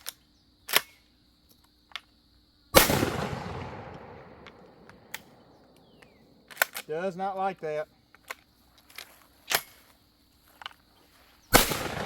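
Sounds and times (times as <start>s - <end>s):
shotgun shot with echo: 2.8s - 5.5s, 11.5s - 12.0s.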